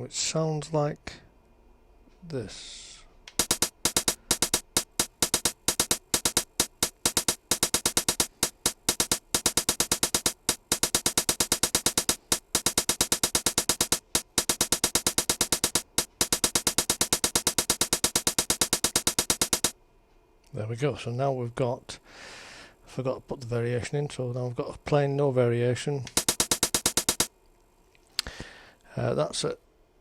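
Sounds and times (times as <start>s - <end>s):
sampled hi-hat pattern: 3.4s - 19.8s, 26.1s - 27.3s.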